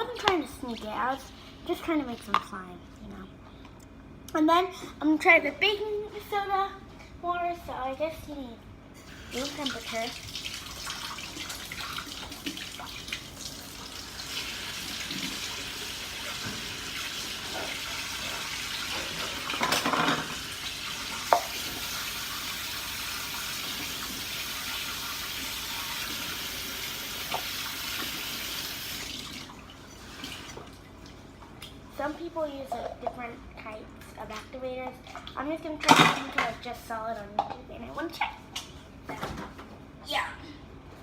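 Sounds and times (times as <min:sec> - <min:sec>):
water running from a tap: 0:09.0 - 0:30.7.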